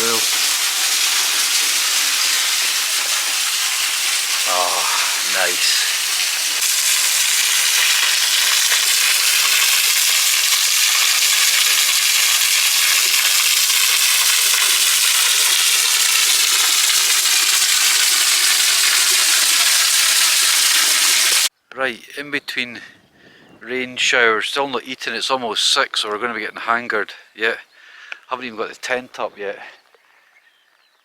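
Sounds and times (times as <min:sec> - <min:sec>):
hiss of water: 0:00.0 - 0:21.5.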